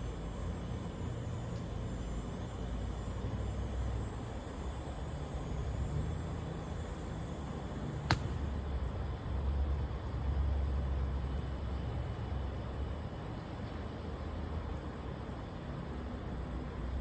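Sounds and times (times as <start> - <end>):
steady hiss: 0.0 - 10.5.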